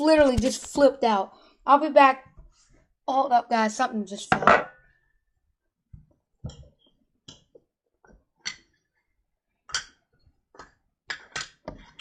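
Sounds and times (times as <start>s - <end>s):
small objects clicking and knocking: 9.7s - 12.0s.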